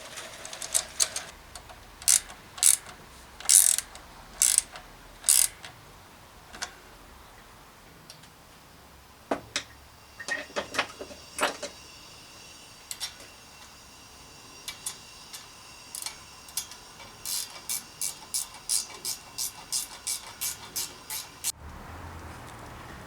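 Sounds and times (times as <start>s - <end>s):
mechanical clicks ticking: 0.6s - 5.8s.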